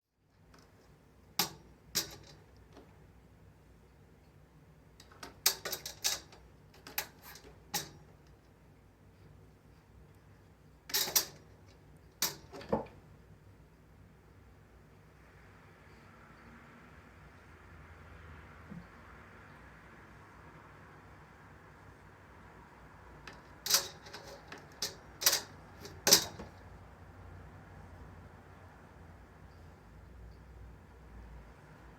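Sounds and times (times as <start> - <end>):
curtain-rail runners clacking: 1.4 - 2.4, 5.0 - 8.1, 10.9 - 11.5, 12.2 - 12.9, 23.3 - 26.6.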